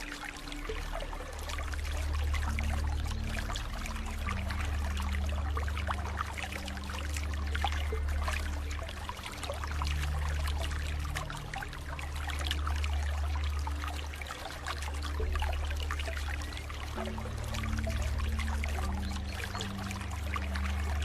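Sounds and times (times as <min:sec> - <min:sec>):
soft music of low notes: 0:00.0 - 0:21.0
water trickling and splashing: 0:00.0 - 0:21.0.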